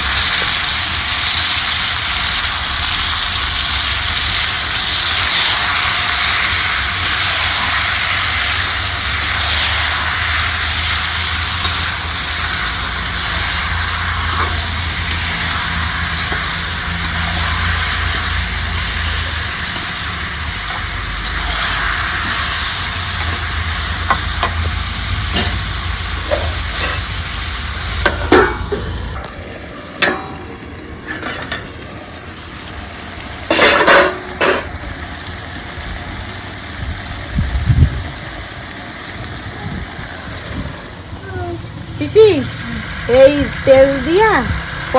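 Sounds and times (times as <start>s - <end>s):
chicken sizzling in oil: 0.0s - 44.9s
utensil scraping and knocking pan: 28.0s - 29.1s.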